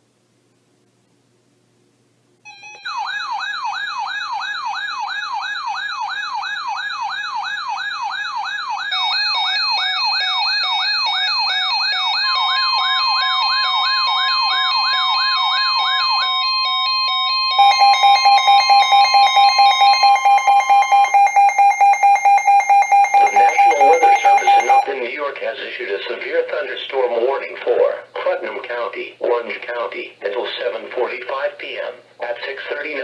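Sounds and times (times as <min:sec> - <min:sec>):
pulsing alarm tone: 0:02.5 - 0:24.9
wailing siren tone: 0:02.5 - 0:24.9.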